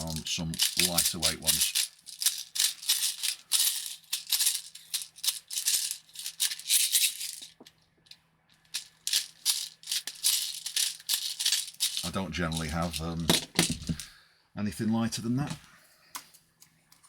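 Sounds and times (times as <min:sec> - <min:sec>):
plastic pellets rattling: 0:00.0 - 0:07.7, 0:08.6 - 0:14.1.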